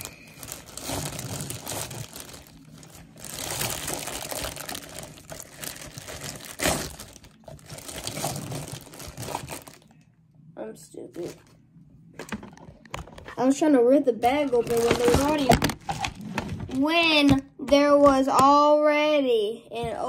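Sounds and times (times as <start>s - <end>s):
packaging bag crinkling: 0.0s - 10.0s, 14.4s - 16.3s.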